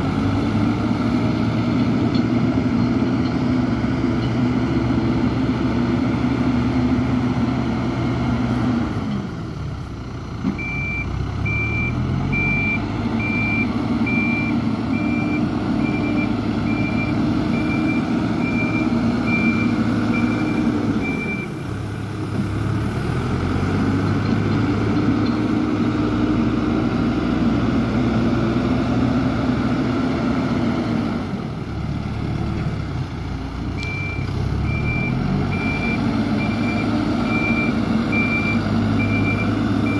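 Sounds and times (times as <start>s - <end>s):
reversing alarm beeping: 10.6s - 21.5s, 33.8s - 39.9s.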